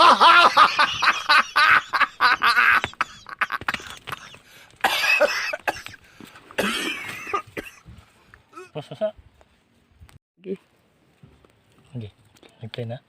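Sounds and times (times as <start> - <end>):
person laughing: 0.0 - 4.4.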